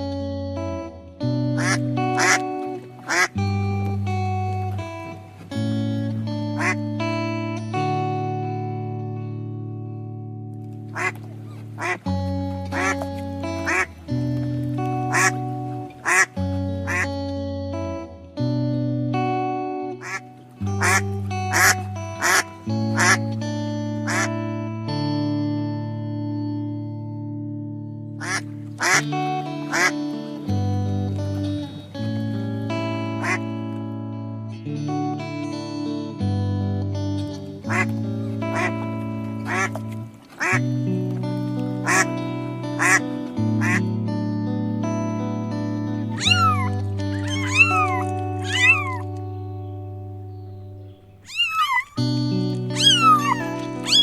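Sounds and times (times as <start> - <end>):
music of long held notes: 0.0 - 51.2
duck quacking: 1.6 - 2.4, 3.1 - 3.3, 6.6 - 6.8, 11.0 - 11.2, 11.8 - 12.0, 12.8 - 13.0, 13.6 - 13.9, 15.1 - 15.4, 16.0 - 16.3, 16.9 - 17.1, 20.8 - 22.4, 23.0 - 23.2, 24.1 - 24.3, 28.2 - 29.0, 29.7 - 29.9, 38.5 - 38.8, 39.5 - 39.7, 40.4 - 40.6, 41.8 - 42.1, 42.8 - 43.0, 43.6 - 43.8, 46.1 - 49.1, 51.3 - 52.1, 52.7 - 54.0
cat meowing: 46.2 - 49.2, 51.2 - 54.0.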